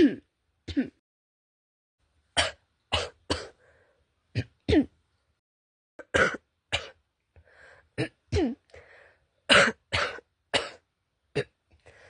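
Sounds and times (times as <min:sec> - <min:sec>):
faint breaths: 0:03.6 - 0:04.2, 0:07.4 - 0:08.0, 0:08.7 - 0:09.5, 0:11.8 - 0:12.0
girl coughing: 0:06.0 - 0:07.0, 0:09.5 - 0:10.8.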